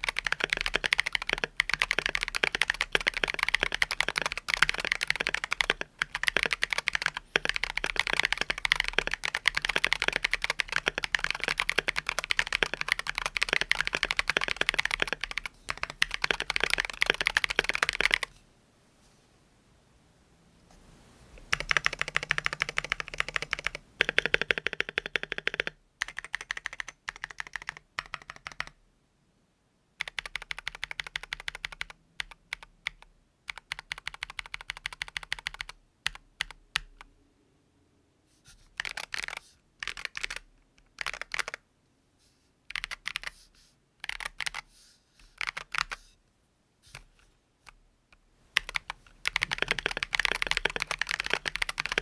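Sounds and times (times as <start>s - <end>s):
mechanical keyboard typing: 0.0s - 18.3s, 21.4s - 28.8s, 30.0s - 37.1s, 38.8s - 41.6s, 42.7s - 43.4s, 44.0s - 44.7s, 45.4s - 46.0s, 48.6s - 52.0s.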